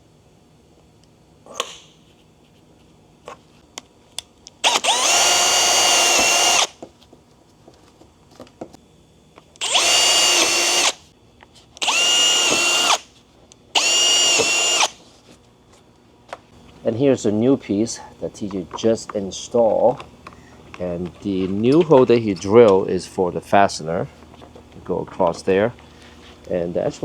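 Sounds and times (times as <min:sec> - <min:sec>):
power drill whining: 0:04.6 - 0:06.7, 0:09.6 - 0:11.0, 0:11.8 - 0:13.1, 0:13.8 - 0:15.0.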